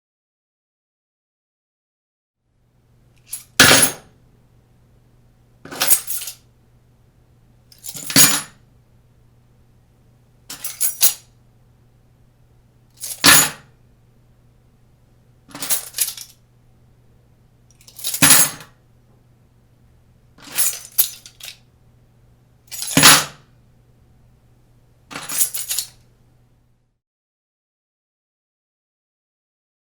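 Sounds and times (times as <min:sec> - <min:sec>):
keys jingling set down: 0:03.2 - 0:04.0, 0:05.7 - 0:06.4, 0:07.7 - 0:08.5, 0:10.5 - 0:11.3, 0:13.0 - 0:13.6, 0:15.5 - 0:16.4, 0:17.7 - 0:18.7, 0:20.4 - 0:21.6, 0:22.7 - 0:23.4, 0:25.1 - 0:26.0.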